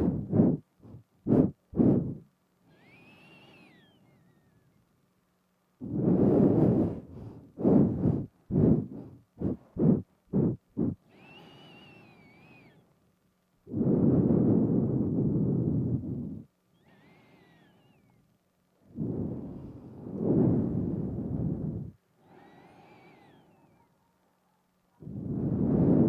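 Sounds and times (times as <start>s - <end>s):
loud exhaled puffs: 0.0s - 3.9s, 5.8s - 12.8s
whistling nose inhale: 0.0s - 4.7s, 5.8s - 12.9s, 13.7s - 18.2s, 19.0s - 23.9s.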